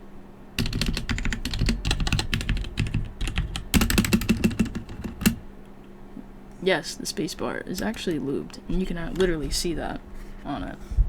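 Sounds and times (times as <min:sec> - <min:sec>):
mechanical keyboard typing: 0:00.6 - 0:05.4, 0:07.7 - 0:09.6.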